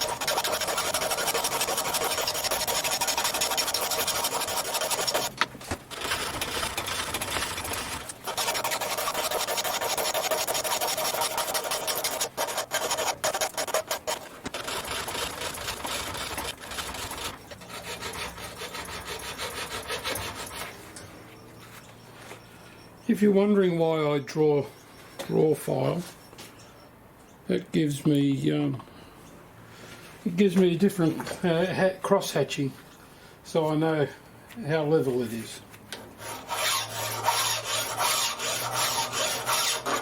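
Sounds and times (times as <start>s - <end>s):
hand file rasping on metal: 0.0s - 20.8s, 36.2s - 40.0s.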